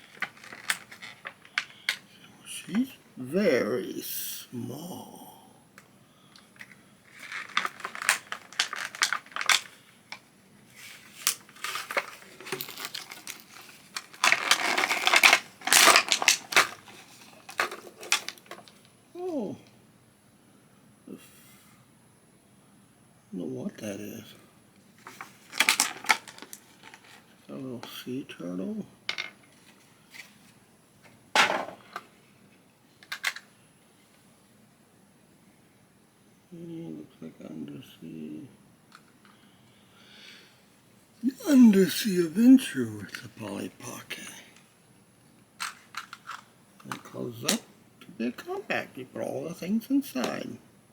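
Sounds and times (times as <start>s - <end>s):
plastic packaging crinkling: 0.0s - 2.0s, 7.1s - 9.8s, 10.8s - 18.8s, 25.0s - 27.2s
plastic toy handling noise: 0.0s - 2.9s, 6.4s - 18.9s, 25.0s - 27.3s, 29.1s - 32.2s, 33.0s - 33.6s, 38.9s - 39.4s, 45.6s - 47.7s
small plastic pieces clicking: 6.6s - 9.8s, 11.3s - 18.7s.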